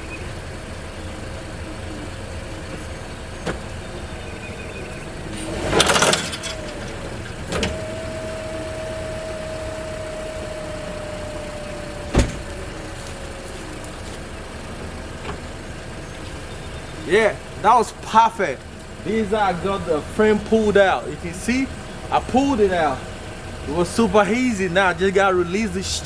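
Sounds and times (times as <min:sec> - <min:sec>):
car engine running: 0:00.0 - 0:26.0
steady whine: 0:00.0 - 0:26.0.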